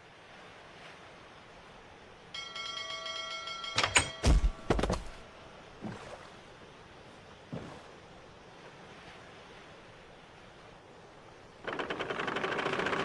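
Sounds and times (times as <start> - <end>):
sea and wind hiss: 0.0 - 3.8, 5.2 - 13.0
bright ringing chime: 2.4 - 4.7
heavy thunks and knocks: 3.8 - 5.2.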